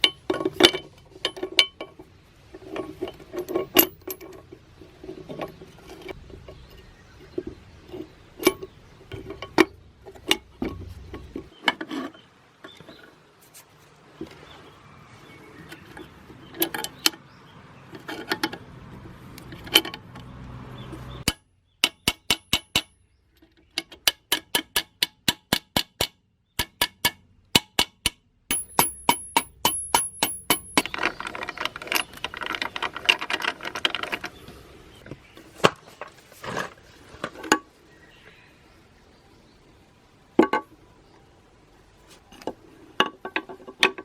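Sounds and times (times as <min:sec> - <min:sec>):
metal tools clinking and knocking: 0:00.0 - 0:06.9, 0:28.5 - 0:37.6.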